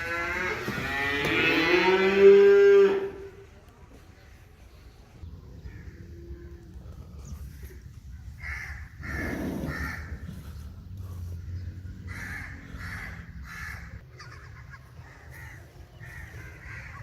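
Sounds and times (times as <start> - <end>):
crows cawing: 8.4 - 10.2, 12.1 - 14.4, 15.0 - 17.0.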